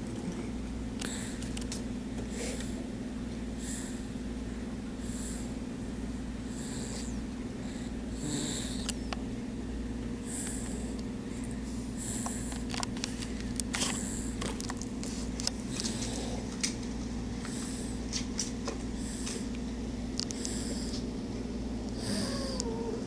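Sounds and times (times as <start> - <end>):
pet snoring: 5.0 - 5.5, 6.4 - 9.1, 10.2 - 10.9, 12.0 - 12.7, 15.6 - 16.6, 17.4 - 18.1, 20.3 - 21.0, 22.0 - 23.0.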